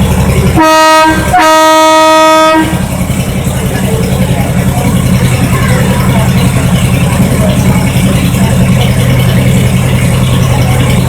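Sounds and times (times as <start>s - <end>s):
locomotive engine idling: 0.0s - 11.0s
locomotive horn blasts: 0.5s - 2.9s.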